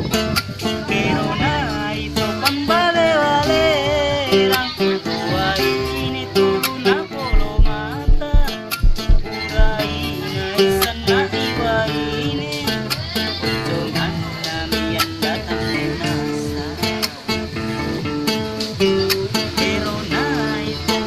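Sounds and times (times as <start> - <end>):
plucked guitar: 0.0 - 21.0
person singing: 0.6 - 17.4, 18.8 - 21.0
steady beat: 7.3 - 10.0.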